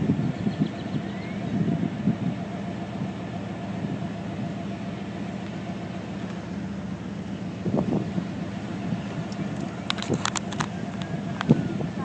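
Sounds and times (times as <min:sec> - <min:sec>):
vehicle engine idling: 0:00.0 - 0:12.0.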